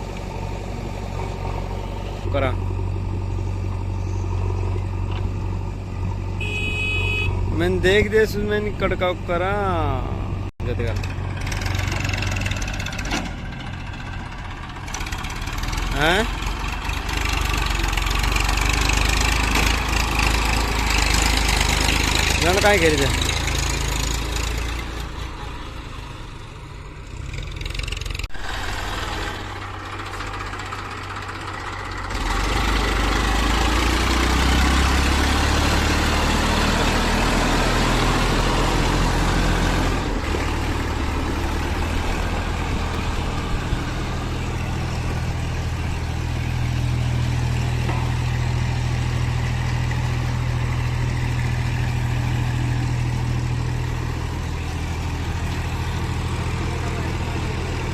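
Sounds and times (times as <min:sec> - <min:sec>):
heavy diesel engine running: 0:00.0 - 0:57.9.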